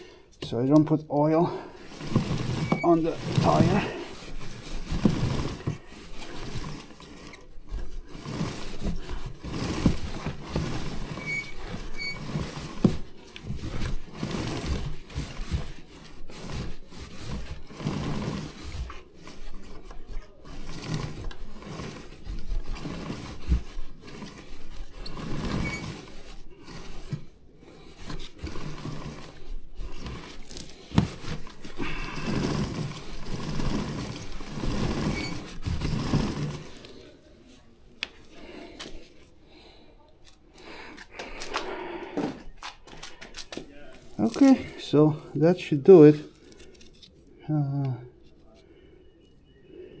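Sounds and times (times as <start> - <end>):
rag rubbing a chain: 1.7 - 36.8.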